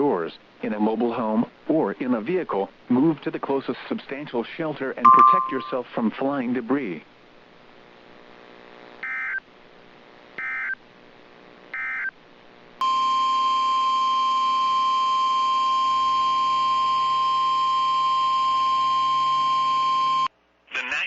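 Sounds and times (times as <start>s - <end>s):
steady single-pitched alert tone: 5.1s - 5.9s.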